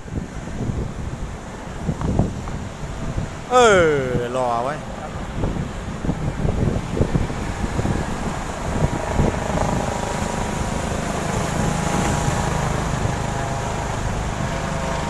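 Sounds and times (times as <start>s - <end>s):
wind buffeting microphone: 0.0s - 15.0s
faint motor drone: 6.0s - 15.0s.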